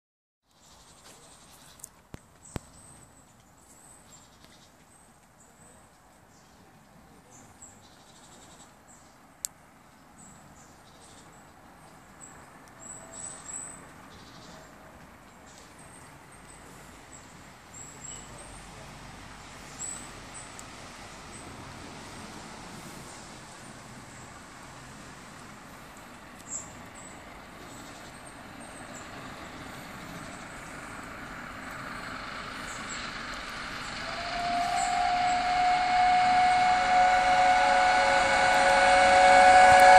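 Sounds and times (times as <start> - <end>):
steam train rumbling: 11.0 - 39.9.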